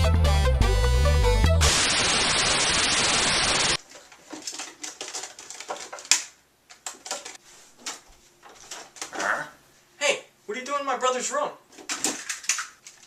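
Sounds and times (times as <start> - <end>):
loud static hiss: 1.6 - 3.8.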